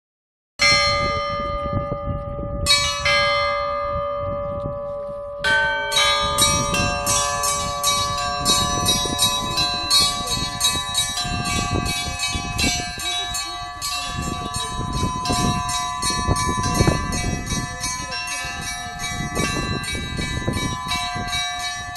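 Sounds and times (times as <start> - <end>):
church bells ringing: 0.6 - 21.9
large bell ringing: 0.6 - 21.9
quick peal of bells: 5.3 - 21.9.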